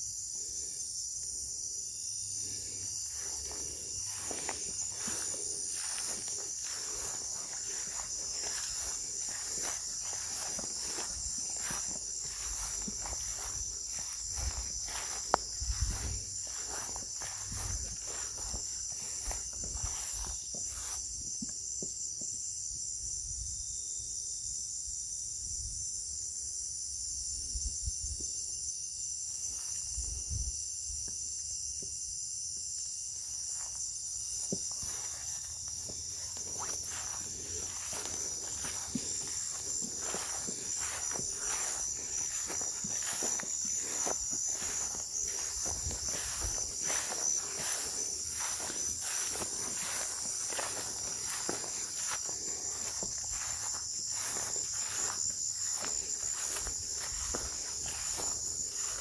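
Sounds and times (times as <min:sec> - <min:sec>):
crickets trilling: 0:00.0 - 0:59.0
rustle of brush: 0:02.5 - 0:21.1, 0:34.6 - 0:59.0
footsteps: 0:02.5 - 0:21.5, 0:33.5 - 0:59.0.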